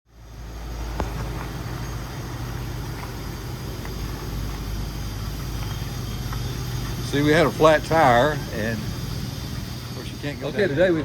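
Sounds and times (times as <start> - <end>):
vehicle engine humming: 0.1 - 11.0.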